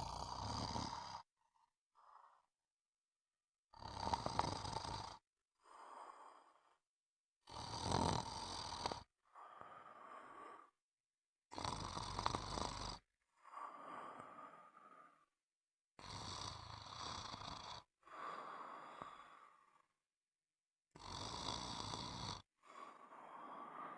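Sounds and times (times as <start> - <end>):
loud snores: 0.0 - 1.3, 3.7 - 6.8, 7.4 - 10.8, 11.5 - 15.3, 16.0 - 19.9, 20.9 - 23.9
quiet breaths: 0.0 - 2.5, 4.1 - 6.8, 7.7 - 10.8, 11.7 - 15.4, 16.0 - 20.0, 21.0 - 23.9.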